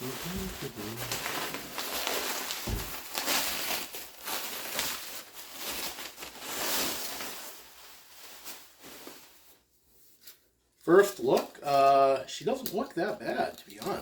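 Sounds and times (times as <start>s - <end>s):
packaging rustling and crinkling: 0.0s - 10.4s.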